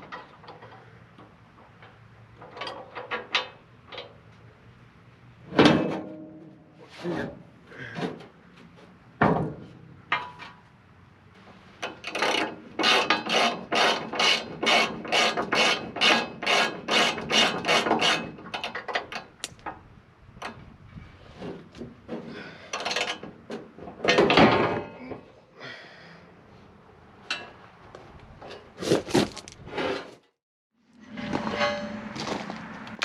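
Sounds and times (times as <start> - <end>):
hand tool rasping on steel: 12.8 - 18.3.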